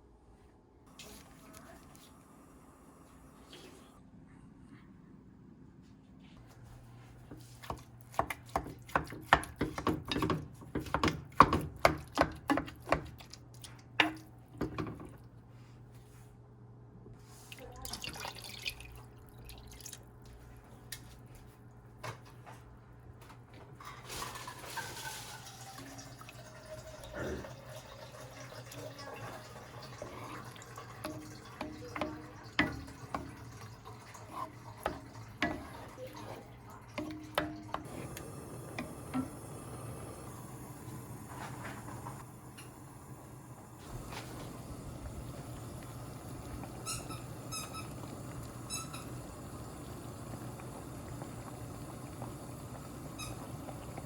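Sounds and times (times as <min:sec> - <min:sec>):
water running from a tap: 0:17.6 - 0:20.0, 0:24.2 - 0:40.4, 0:43.6 - 0:54.0.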